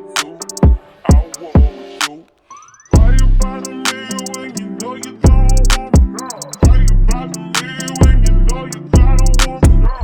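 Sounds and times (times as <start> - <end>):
hi-hat ticks: 0.0 - 1.5, 3.0 - 9.8
heavy bass beat: 3.0 - 10.0
plucked guitar line: 3.0 - 10.0.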